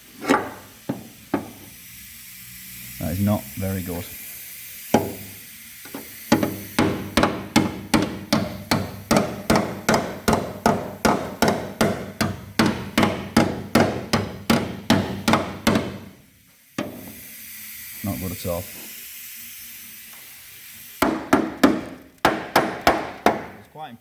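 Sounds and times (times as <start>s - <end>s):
hammer beating on rusted metal: 5.0s - 5.3s, 6.3s - 16.2s, 21.0s - 23.6s.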